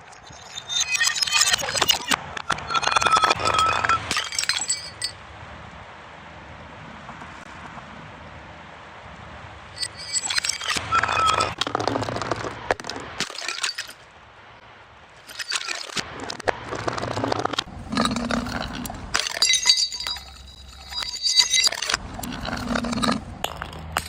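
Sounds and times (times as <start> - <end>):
glass bottles shattering: 0.1 - 5.2, 9.8 - 14.0, 15.2 - 24.0
glass ringing: 0.3 - 5.2, 9.8 - 11.6, 17.9 - 24.0.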